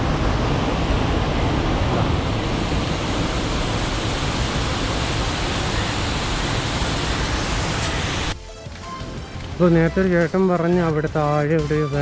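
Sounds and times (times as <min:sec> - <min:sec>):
waterfall rushing: 0:00.0 - 0:08.4.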